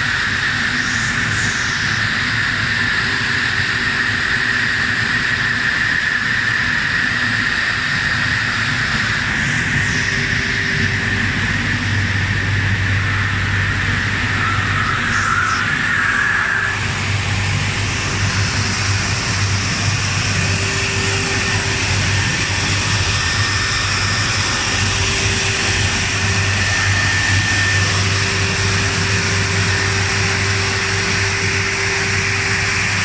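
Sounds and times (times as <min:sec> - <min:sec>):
electric motor hum: 0:08.1 - 0:33.0.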